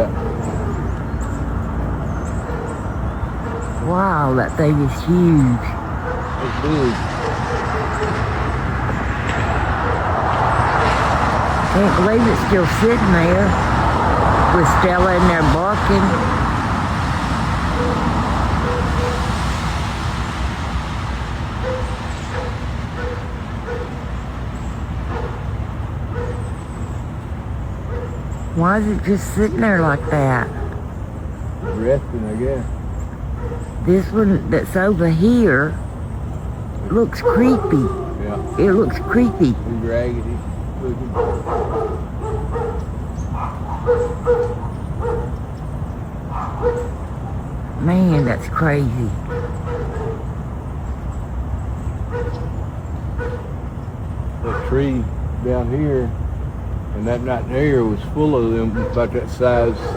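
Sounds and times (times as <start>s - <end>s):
dog barking: 0.0s - 1.0s, 2.4s - 3.8s, 6.0s - 11.1s, 17.7s - 19.3s, 21.6s - 24.0s, 25.1s - 25.5s, 26.1s - 26.5s, 27.8s - 28.2s, 30.0s - 30.9s, 31.6s - 32.0s, 33.3s - 33.8s, 37.1s - 39.7s, 41.0s - 45.4s, 46.3s - 47.5s, 49.2s - 50.4s, 52.1s - 52.6s, 53.2s - 53.6s, 54.4s - 54.8s, 58.6s - 59.9s.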